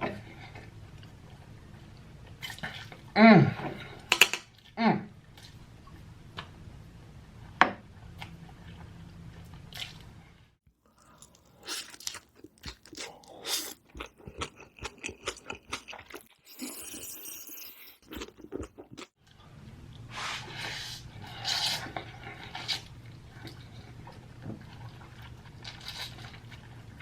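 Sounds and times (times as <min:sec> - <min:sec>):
chewing and crunching food: 0:08.0 - 0:19.5, 0:21.1 - 0:27.0.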